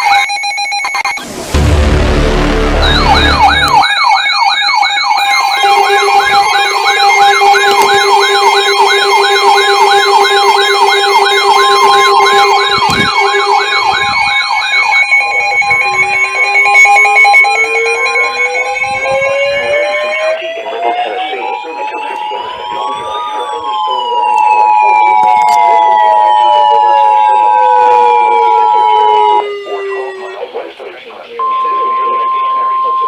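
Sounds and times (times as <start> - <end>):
electronic siren yelping: 0.0 - 30.6
low rumble: 1.3 - 3.8.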